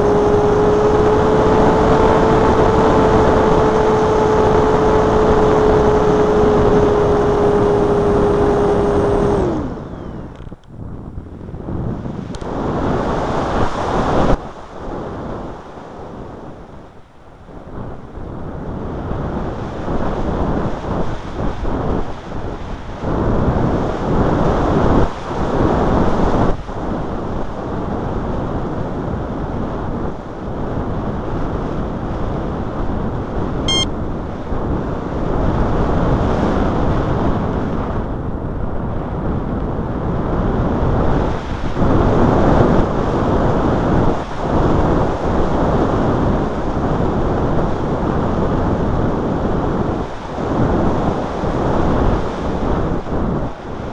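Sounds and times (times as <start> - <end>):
electric motor whining: 0.0 - 10.6
wind noise on microphone: 0.0 - 53.9.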